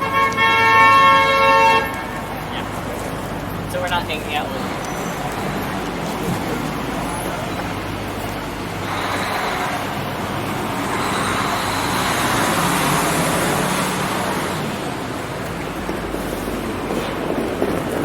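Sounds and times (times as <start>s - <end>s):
street traffic drone: 0.0s - 18.0s
vehicle passing close by: 8.8s - 18.0s.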